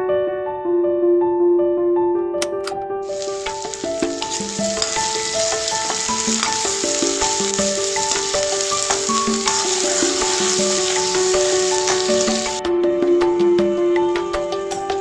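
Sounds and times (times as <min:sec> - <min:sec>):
background music melody: 0:02.2 - 0:15.0
fish sizzling in hot oil: 0:03.0 - 0:12.6.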